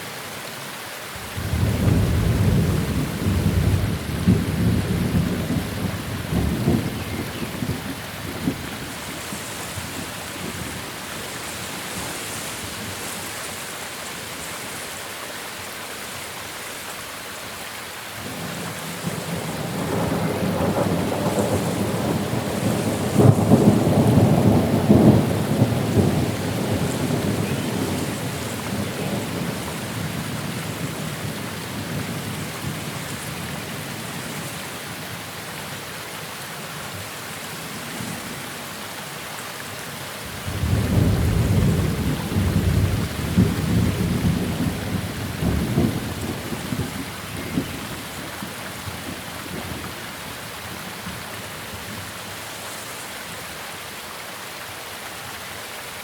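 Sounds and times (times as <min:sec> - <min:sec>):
steady rain: 0:00.0 - 0:56.0
thunder rolling: 0:01.4 - 0:08.6, 0:40.4 - 0:47.9.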